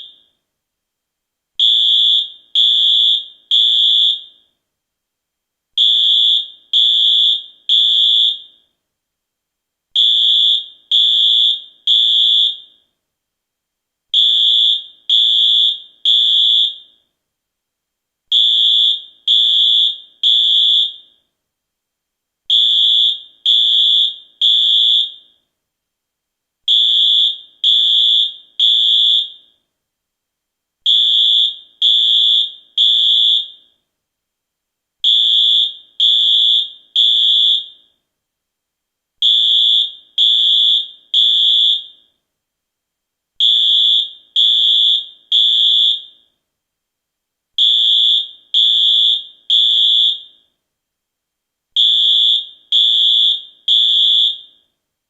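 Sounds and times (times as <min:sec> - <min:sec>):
fire alarm beeps: 0:00.0 - 0:00.4, 0:01.6 - 0:04.6, 0:05.8 - 0:08.7, 0:10.0 - 0:12.9, 0:14.2 - 0:17.1, 0:18.3 - 0:21.3, 0:22.5 - 0:25.5, 0:26.7 - 0:29.6, 0:30.9 - 0:33.8, 0:35.0 - 0:38.0, 0:39.2 - 0:42.2, 0:43.4 - 0:46.4, 0:47.6 - 0:50.5, 0:51.8 - 0:54.7.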